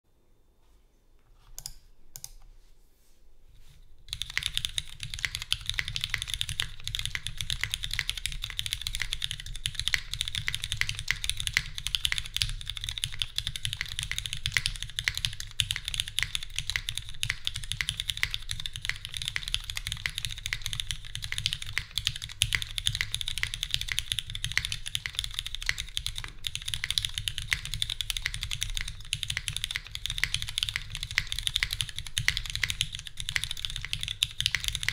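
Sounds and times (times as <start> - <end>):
mechanical keyboard typing: 4.1 - 34.9.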